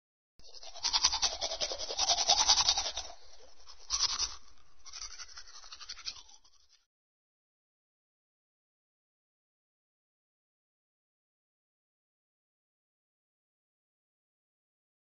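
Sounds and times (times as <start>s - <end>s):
toothbrush scrubbing teeth: 0.4s - 6.9s.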